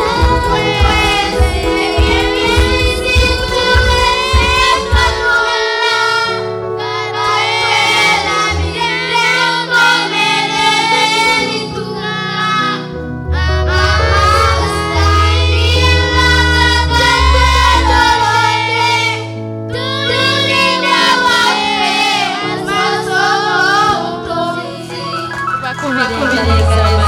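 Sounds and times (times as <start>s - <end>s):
band with drum beat: 0.0s - 5.4s
voices singing: 0.0s - 27.0s.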